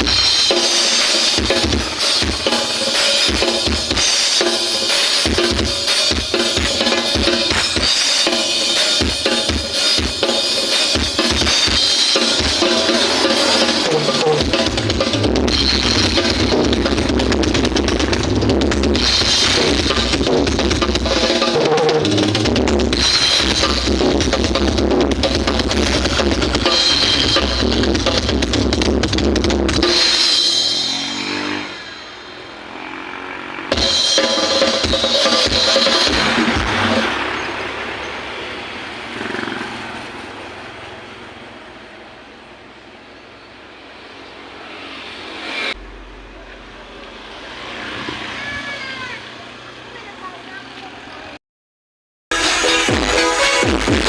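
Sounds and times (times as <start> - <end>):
drum-heavy music over speakers: 0.0 - 32.6, 33.7 - 37.9, 52.3 - 54.0.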